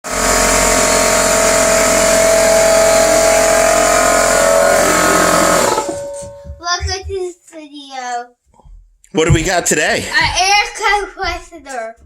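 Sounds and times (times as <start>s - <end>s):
air compressor running: 0.0s - 6.6s.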